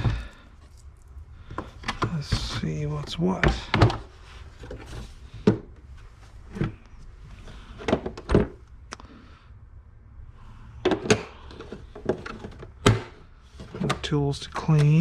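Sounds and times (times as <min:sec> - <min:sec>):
items knocking and thudding: 0:00.0 - 0:00.8, 0:03.3 - 0:06.8, 0:07.5 - 0:08.6, 0:10.8 - 0:15.0.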